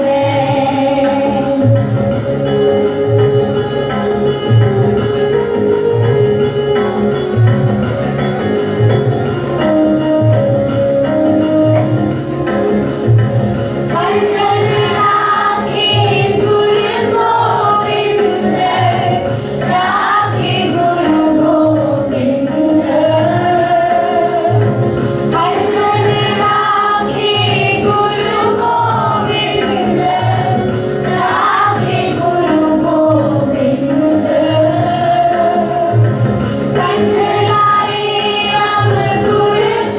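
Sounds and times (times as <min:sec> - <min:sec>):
group singing a hymn: 0:00.0 - 0:01.9, 0:13.9 - 0:39.9
steady percussion beat: 0:00.0 - 0:39.9.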